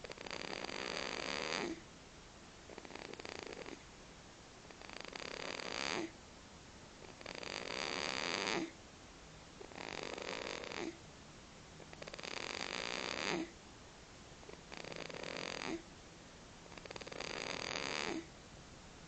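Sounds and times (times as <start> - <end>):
baby snoring: 0.0 - 1.8, 2.7 - 3.8, 4.7 - 6.2, 7.0 - 8.8, 9.6 - 11.0, 11.9 - 13.6, 14.5 - 15.9, 16.7 - 18.3.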